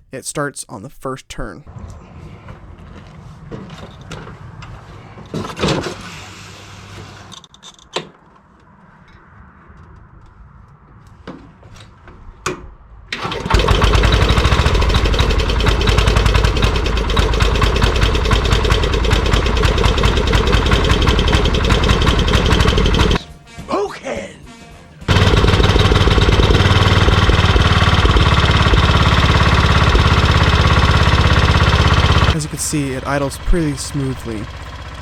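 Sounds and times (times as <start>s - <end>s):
tractor engine running: 13.2s - 23.2s, 25.1s - 35.0s.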